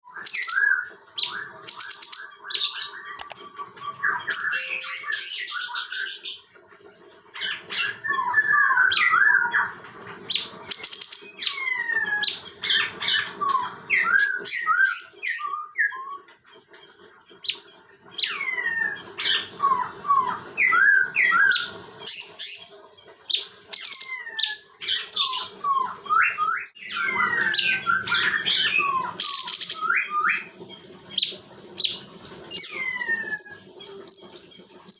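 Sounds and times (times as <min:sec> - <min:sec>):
bird singing whistled notes: 0:23.3 - 0:34.9.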